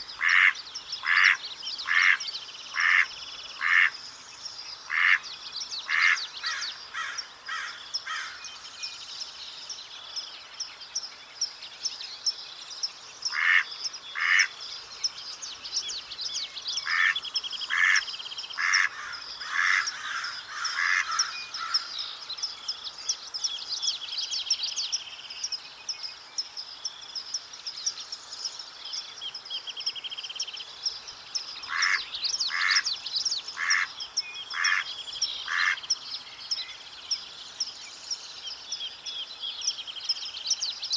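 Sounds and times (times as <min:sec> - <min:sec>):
songbird chatter: 0:00.0 - 0:40.9
ducks quacking: 0:00.2 - 0:02.2, 0:02.8 - 0:03.9.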